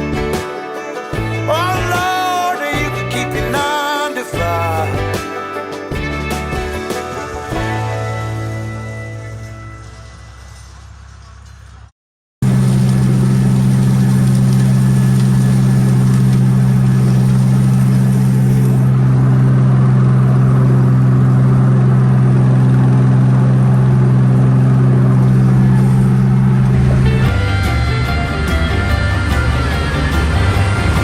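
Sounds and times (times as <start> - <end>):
combine engine drone: 12.4 - 31.0.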